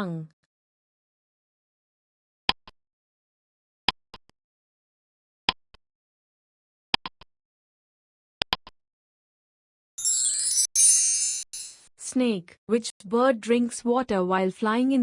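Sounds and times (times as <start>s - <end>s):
bright tinkling chime: 10.0s - 11.9s.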